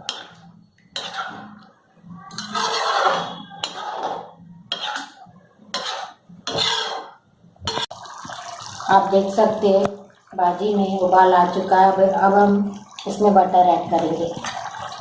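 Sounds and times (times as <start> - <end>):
metal utensil scraping a pan: 0.0 - 1.6, 2.3 - 7.9.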